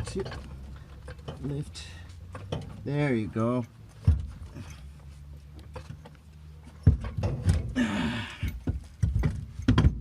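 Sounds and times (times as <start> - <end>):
metal clunks and knocks: 0.0 - 5.0, 5.6 - 10.0
person grunting with effort: 7.7 - 8.5.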